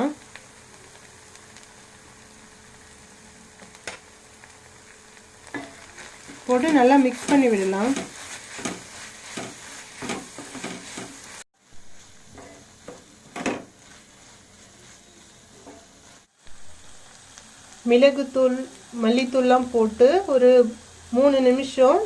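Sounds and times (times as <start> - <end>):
light sizzle in a pan: 0.0 - 22.0
spatula scraping and tapping pan: 5.4 - 11.4, 12.3 - 16.2.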